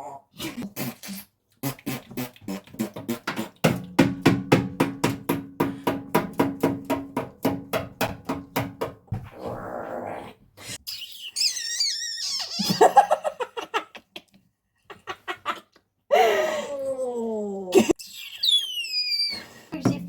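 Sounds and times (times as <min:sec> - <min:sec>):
parrot making popping noises: 0:00.8 - 0:04.1.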